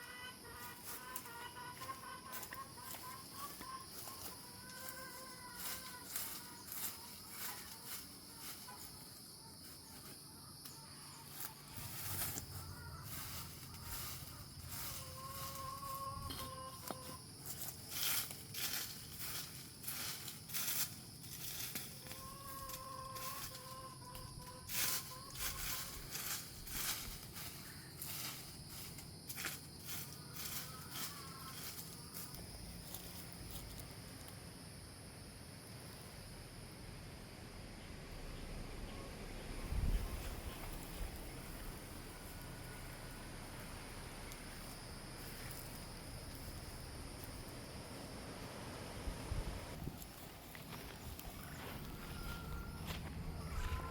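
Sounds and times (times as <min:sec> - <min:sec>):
insect buzz: 0:00.0 - 0:53.9
scraping rustling strokes: 0:11.3 - 0:16.6, 0:17.4 - 0:23.8, 0:24.6 - 0:33.7.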